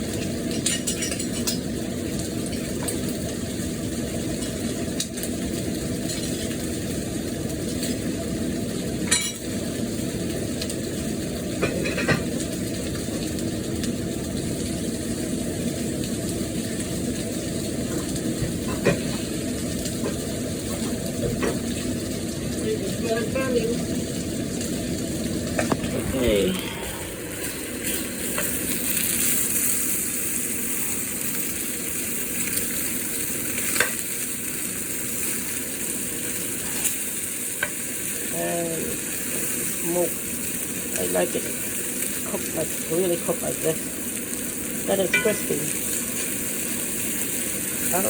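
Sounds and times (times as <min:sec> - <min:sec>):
chicken sizzling in oil: 0:00.0 - 0:48.0
utensil clinking against pan: 0:45.1 - 0:45.5.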